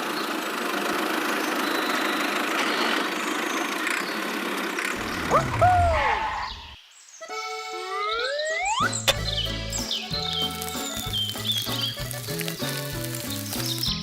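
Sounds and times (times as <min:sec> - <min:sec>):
mechanical engine running: 0:00.0 - 0:06.1
whistle-like pitch glides: 0:05.1 - 0:09.4.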